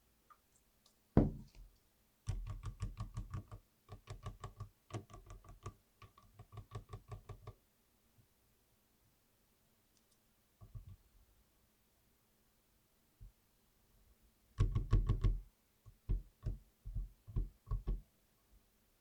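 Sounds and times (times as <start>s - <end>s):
heavy knock: 1.2s - 1.5s.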